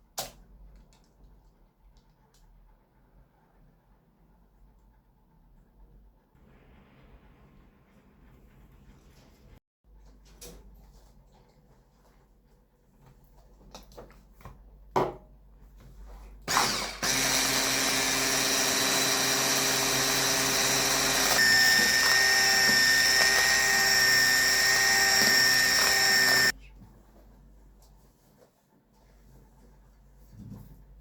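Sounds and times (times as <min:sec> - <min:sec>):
electric hand mixer whining: 0:16.5 - 0:26.6.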